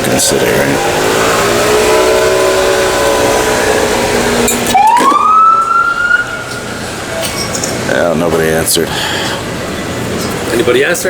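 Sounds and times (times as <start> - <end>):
emergency vehicle siren: 0.0 - 7.2.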